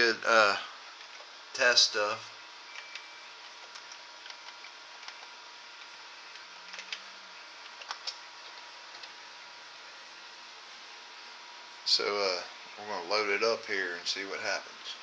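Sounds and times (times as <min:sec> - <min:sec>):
faint high whine: 0:00.0 - 0:15.0
low hiss: 0:00.0 - 0:15.0
faint clicks and ticks: 0:02.7 - 0:09.2.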